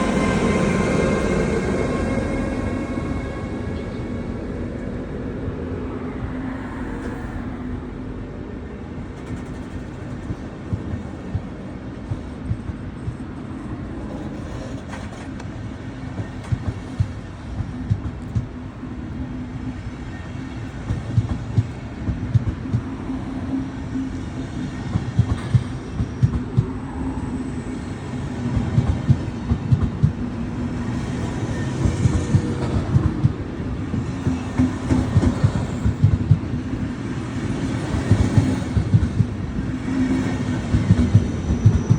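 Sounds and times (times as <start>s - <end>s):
train rumble: 0.0s - 41.9s
train wheels clattering over rail joints: 9.1s - 18.6s.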